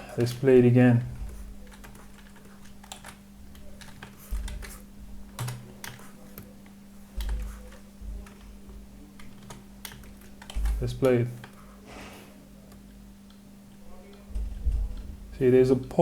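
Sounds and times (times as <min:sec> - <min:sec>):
steady low hum: 0:00.0 - 0:16.0
keyboard keys clicking: 0:01.3 - 0:11.6.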